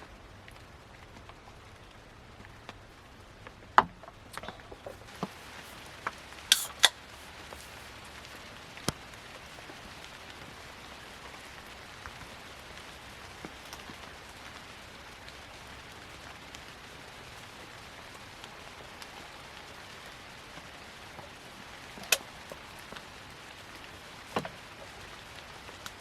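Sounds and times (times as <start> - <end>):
rain pattering: 0.0 - 26.0.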